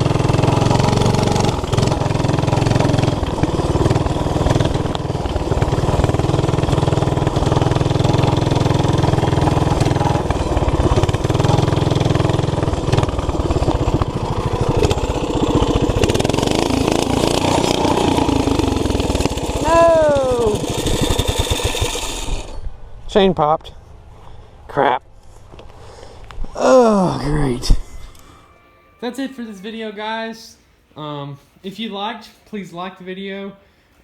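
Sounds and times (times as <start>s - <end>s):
small engine revving: 0.0s - 22.7s.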